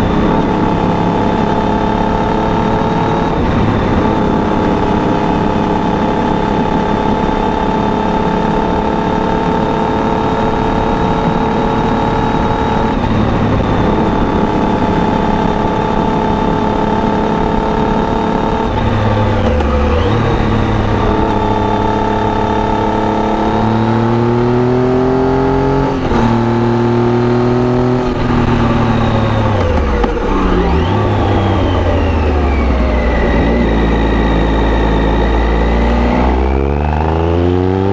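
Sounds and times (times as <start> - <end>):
motorcycle engine revving: 0.0 - 37.9.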